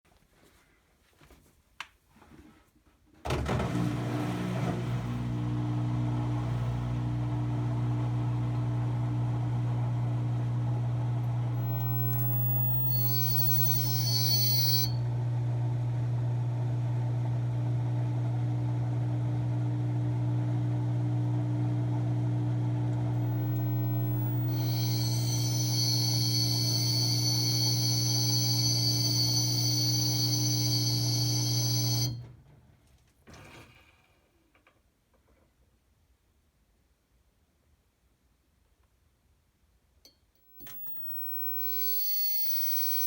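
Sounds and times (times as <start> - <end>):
washing machine electrical hum: 3.3 - 32.6
high-pitched screech: 11.7 - 15.0, 23.3 - 32.1.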